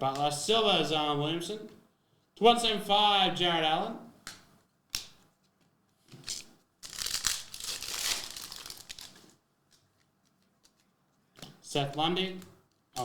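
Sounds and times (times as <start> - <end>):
plastic wrapper tearing and crinkling: 6.2 - 9.4.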